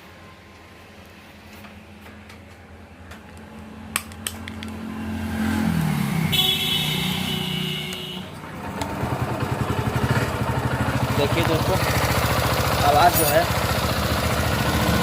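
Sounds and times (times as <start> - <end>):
motorcycle engine starting: 8.3 - 15.0.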